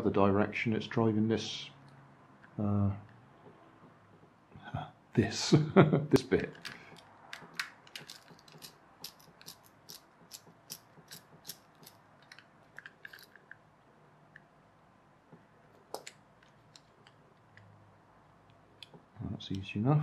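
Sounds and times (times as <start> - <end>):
plastic toy parts clicking: 6.2 - 13.6, 15.8 - 17.7.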